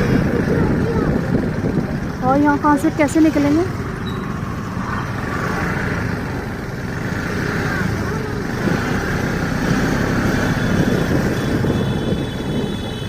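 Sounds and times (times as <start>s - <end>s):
faint voices: 0.0s - 6.2s
vehicle engine and road noise: 0.0s - 13.0s.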